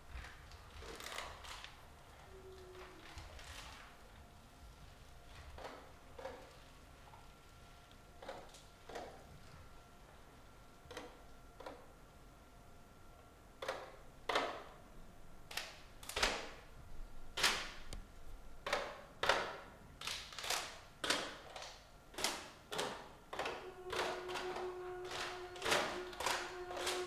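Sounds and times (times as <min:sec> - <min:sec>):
lower held tone: 0:23.6 - 0:27.0.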